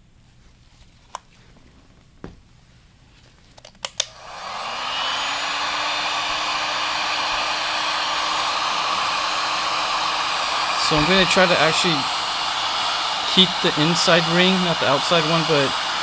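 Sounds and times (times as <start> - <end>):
sharp clicks: 3.6 - 4.3
heat gun blowing air: 4.0 - 16.0.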